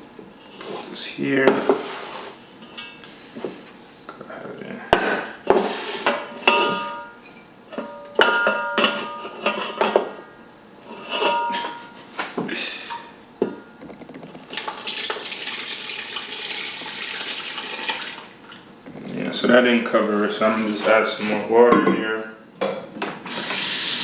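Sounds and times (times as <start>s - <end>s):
metal pot and utensils clanking: 5.6s - 10.2s, 10.9s - 12.0s
water pouring into pot: 14.4s - 18.6s.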